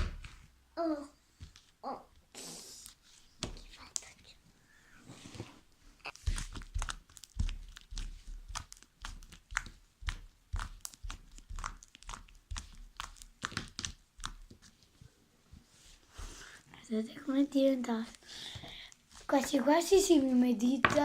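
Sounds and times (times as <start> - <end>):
slime clicking and popping: 6.1 - 14.6.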